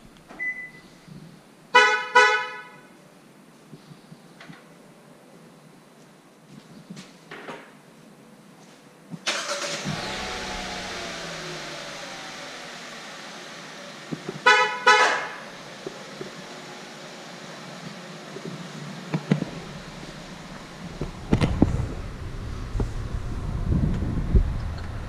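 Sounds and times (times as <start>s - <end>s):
car engine starting and idling: 9.2s - 25.0s
car horn toots: 14.4s - 15.4s.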